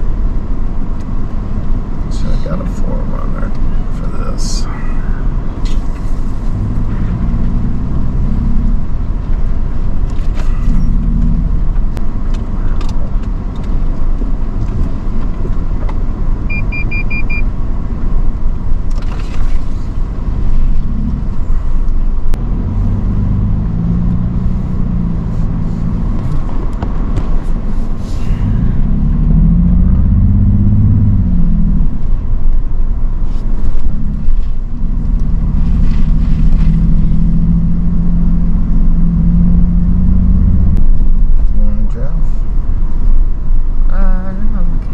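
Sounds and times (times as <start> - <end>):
vehicle engine from inside cabin: 0.0 - 44.9
electronic beep: 16.5 - 17.5.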